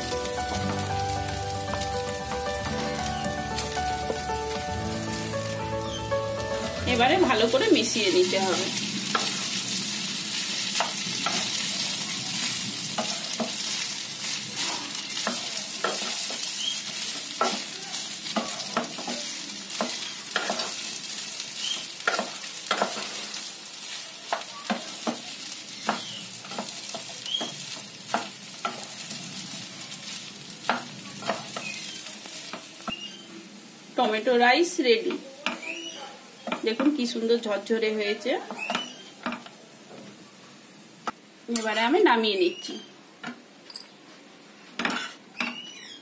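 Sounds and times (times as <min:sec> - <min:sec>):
rice sizzling in frying pan: 0:00.0 - 0:42.4
spatula scraping pan: 0:12.4 - 0:17.7, 0:18.3 - 0:20.8, 0:21.6 - 0:23.4.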